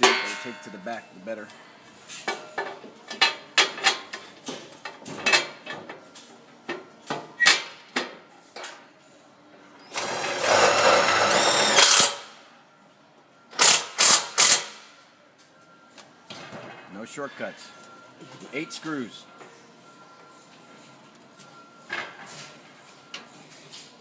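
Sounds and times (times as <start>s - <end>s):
power drill whining: 9.9s - 12.2s.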